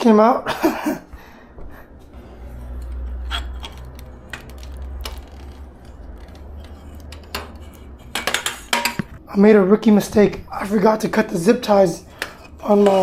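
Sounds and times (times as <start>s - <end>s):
low handling rumble: 1.9s - 10.7s
metal bicycle parts clinking: 2.5s - 9.2s.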